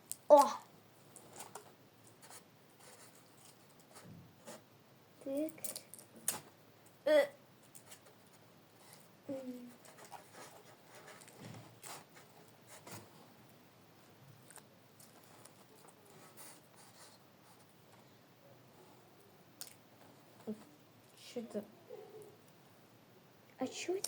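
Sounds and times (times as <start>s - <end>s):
small clicks of parts: 5.4s - 6.5s.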